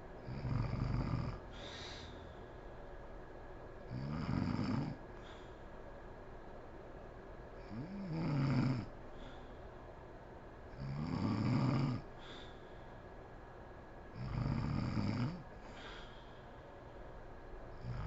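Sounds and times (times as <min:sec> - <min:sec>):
woman snoring: 0:00.2 - 0:01.8, 0:03.9 - 0:05.0, 0:07.6 - 0:08.9, 0:10.8 - 0:12.0, 0:14.2 - 0:15.4, 0:17.8 - 0:18.0
soft breath: 0:01.5 - 0:02.9, 0:05.1 - 0:05.8, 0:09.1 - 0:10.0, 0:12.1 - 0:13.2, 0:15.6 - 0:17.2.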